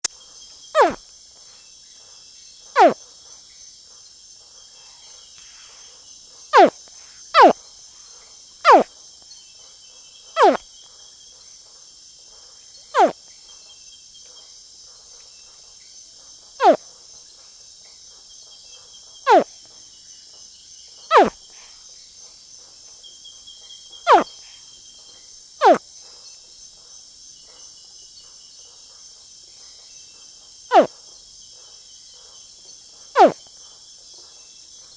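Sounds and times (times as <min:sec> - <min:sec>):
baby crocodile chirps: 0:00.8 - 0:01.0, 0:02.8 - 0:03.0, 0:07.4 - 0:07.6, 0:08.7 - 0:08.9, 0:10.4 - 0:10.6, 0:16.6 - 0:16.8, 0:19.3 - 0:19.5, 0:21.1 - 0:21.4, 0:33.2 - 0:33.4
high insect chorus: 0:15.7 - 0:34.9.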